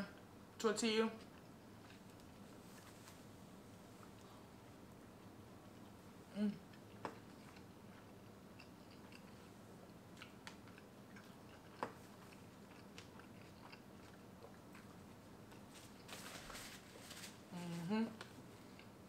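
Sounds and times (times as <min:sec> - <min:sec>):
person chewing food: 0:01.2 - 0:02.6, 0:06.6 - 0:16.1, 0:18.6 - 0:19.0
voice humming: 0:17.5 - 0:18.2.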